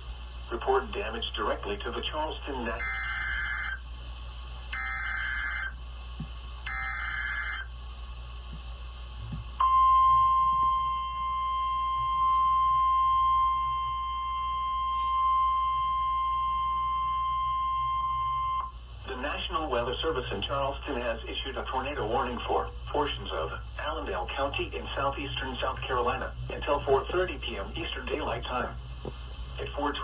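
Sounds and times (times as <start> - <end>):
radio hiss: 0.0 - 9.6, 18.7 - 30.0
steady warning alarm tone: 2.8 - 3.8, 4.7 - 5.8, 6.6 - 7.7, 9.6 - 18.8.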